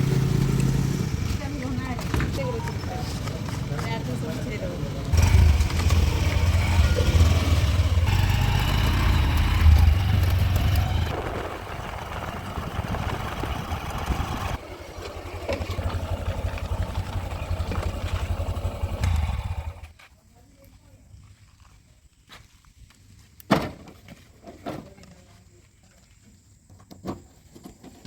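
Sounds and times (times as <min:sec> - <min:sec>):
heavy diesel engine throbbing: 0:05.1 - 0:19.8.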